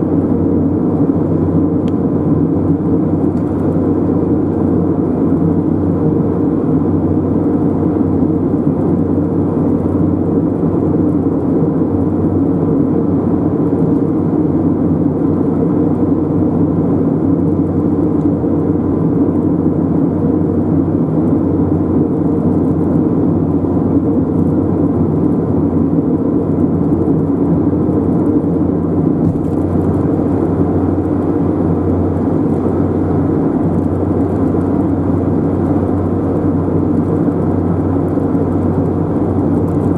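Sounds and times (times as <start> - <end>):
car tyre and engine drone: 0.0 - 39.9.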